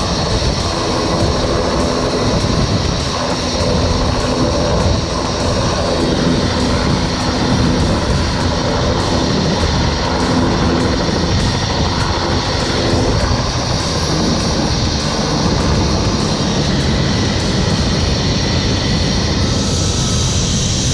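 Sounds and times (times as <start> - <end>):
helicopter rotor and engine: 0.0 - 20.9
wind buffeting microphone: 0.0 - 20.9.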